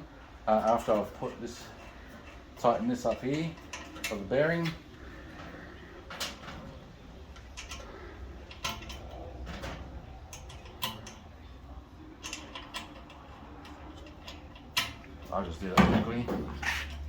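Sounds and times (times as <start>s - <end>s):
low steady hum: 0.0s - 17.0s
hand tool clicking on metal parts: 0.6s - 4.8s, 7.4s - 7.9s, 8.5s - 11.3s, 12.2s - 16.0s.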